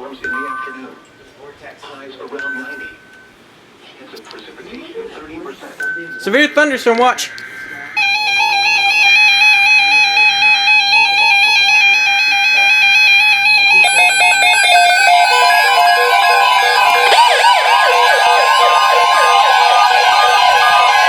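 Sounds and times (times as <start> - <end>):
steady electronic alert tones: 6.0 - 21.0
rapid repeating beeps: 7.0 - 21.0
warbling siren-like glides: 7.2 - 21.0.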